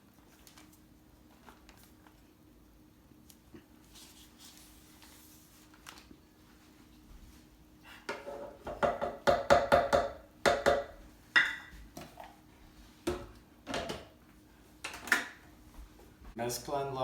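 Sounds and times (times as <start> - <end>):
kitchen objects knocking and clinking: 8.1 - 12.2, 13.1 - 14.2.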